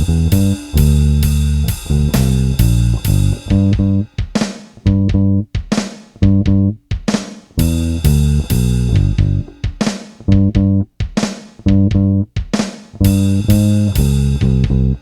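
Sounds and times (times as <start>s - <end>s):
electric bass blues line: 0.0s - 4.1s, 4.8s - 5.5s, 6.2s - 6.8s, 7.6s - 9.6s, 10.3s - 11.0s, 11.6s - 12.4s, 13.0s - 15.0s
drum kit with cymbal: 0.0s - 15.0s.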